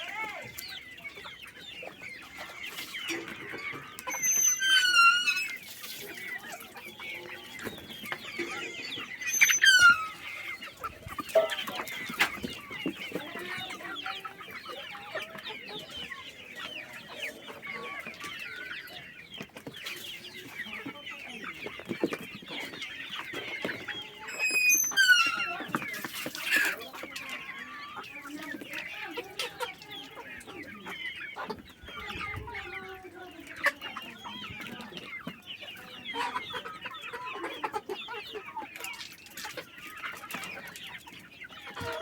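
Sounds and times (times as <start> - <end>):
chickens clucking: 0.0 - 42.0
chicken squawks: 2.3 - 18.6, 22.5 - 34.9.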